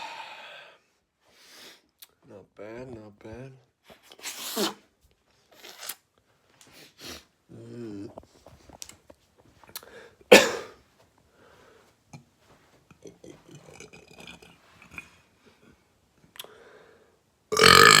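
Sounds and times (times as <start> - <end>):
person breathing: 0.0 - 1.8, 9.8 - 10.2, 11.3 - 12.0, 16.4 - 17.2
person sniffing: 1.4 - 1.8, 4.2 - 4.8
short low burp: 17.5 - 18.0.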